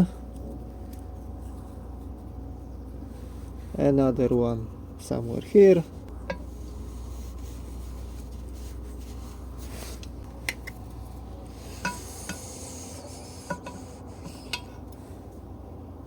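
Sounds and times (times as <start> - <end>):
steady low hum: 0.0 - 16.0
faint metal scraping: 5.8 - 15.2.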